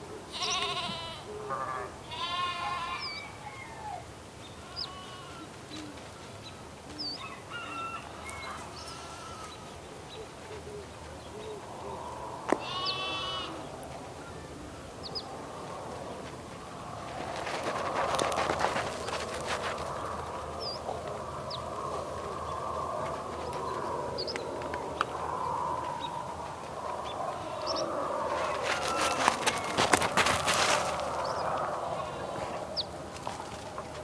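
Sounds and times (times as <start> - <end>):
sheep bleating: 0.3 - 3.2, 4.6 - 5.5, 8.8 - 9.6, 12.6 - 13.6
small birds chirping: 4.4 - 33.9.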